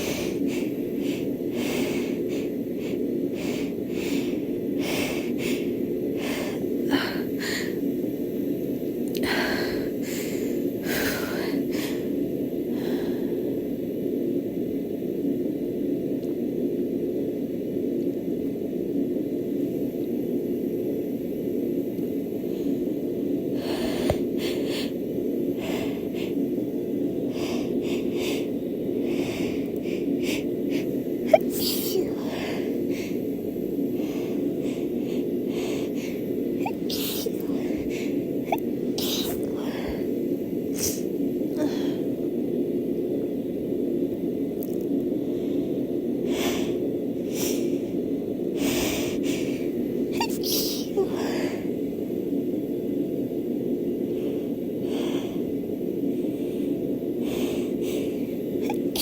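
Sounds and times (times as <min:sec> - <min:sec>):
steady low background hum: 0:00.0 - 0:59.0
woman sniffing: 0:29.2 - 0:33.2, 0:34.7 - 0:40.1, 0:40.7 - 0:41.8, 0:48.6 - 0:51.4, 0:57.4 - 0:59.0.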